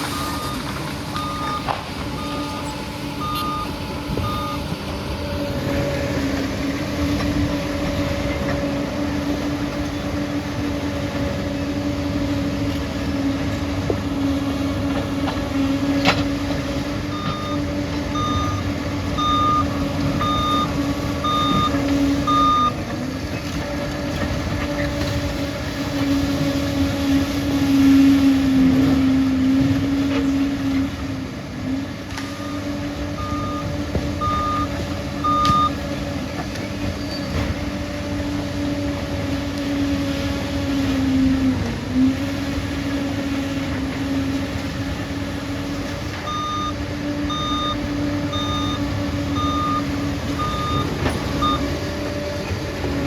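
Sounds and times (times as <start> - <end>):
reversing alarm beeps: 0.0 - 5.3, 17.0 - 22.9, 32.2 - 35.9, 46.2 - 52.1
bulldozer diesel engine running: 0.0 - 53.0.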